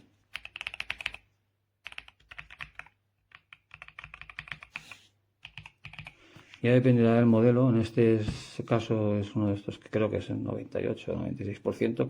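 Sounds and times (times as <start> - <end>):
mechanical keyboard typing: 0.3 - 1.2, 1.8 - 6.2.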